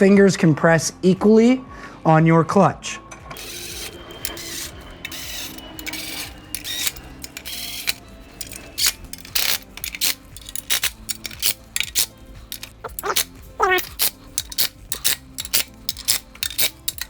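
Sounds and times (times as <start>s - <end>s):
ratchet wrench clicking: 3.4s - 17.0s.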